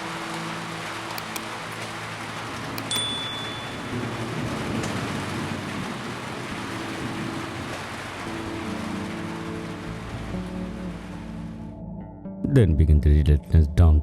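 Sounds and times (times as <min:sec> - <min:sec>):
heavy rain falling: 0:00.0 - 0:11.6
thunder rumble: 0:03.4 - 0:11.6.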